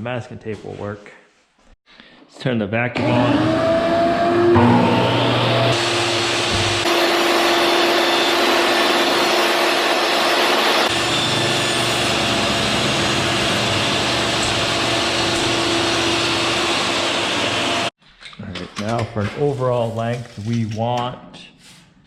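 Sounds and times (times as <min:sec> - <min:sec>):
shop vacuum whining: 0:03.0 - 0:17.9.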